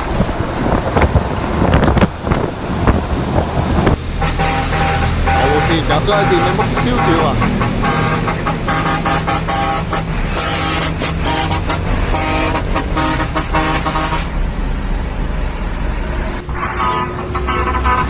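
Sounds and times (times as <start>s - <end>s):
diesel truck engine rumble: 0.0s - 18.0s
road noise: 0.0s - 18.0s
truck horn short toots: 2.9s - 14.4s, 16.6s - 18.0s.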